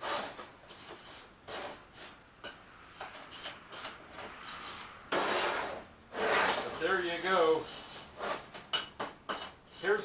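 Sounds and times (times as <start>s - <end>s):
wire brush scrubbing steel: 3.3s - 8.4s, 9.3s - 10.0s.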